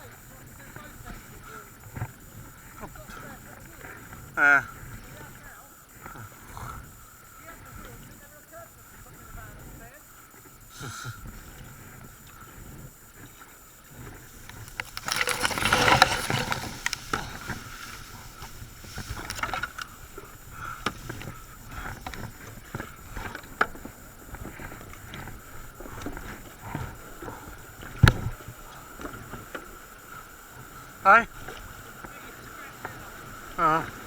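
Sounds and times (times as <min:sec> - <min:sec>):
paddle strokes splashing water: 0:11.3 - 0:34.0.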